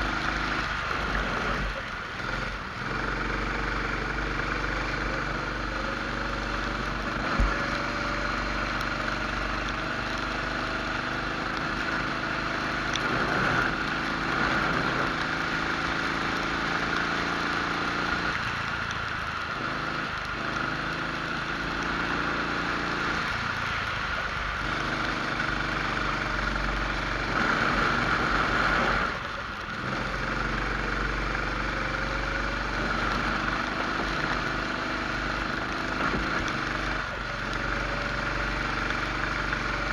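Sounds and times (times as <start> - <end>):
kart engine accelerating: 0.0 - 39.9.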